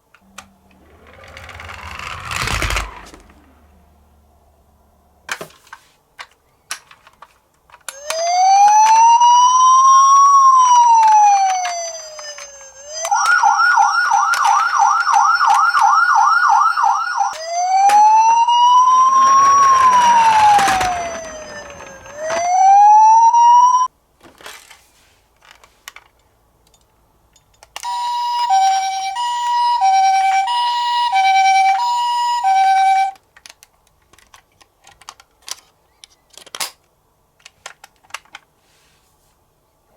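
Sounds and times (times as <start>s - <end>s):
two-tone ambulance siren: 0.7s - 3.1s, 7.9s - 23.9s, 27.9s - 33.2s
toy siren wailing and yelping: 7.9s - 23.9s, 27.9s - 33.2s.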